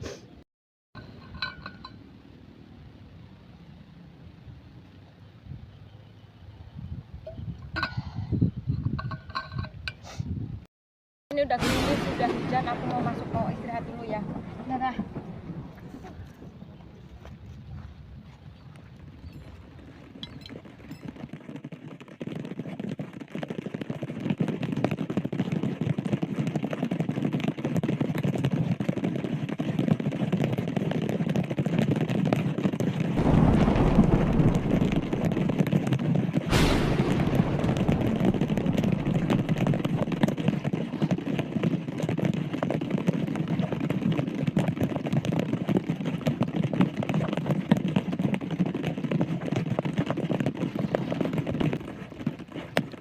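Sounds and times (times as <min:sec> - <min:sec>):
sharp crack: 0:11.5 - 0:16.1, 0:33.2 - 0:40.8
heavy rain falling: 0:33.2 - 0:35.7, 0:36.5 - 0:40.3.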